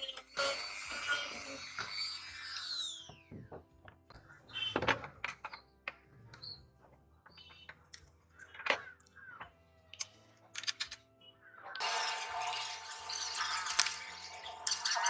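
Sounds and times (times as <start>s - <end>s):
small metal parts and tools clicking: 10.0s - 11.0s, 11.8s - 15.0s.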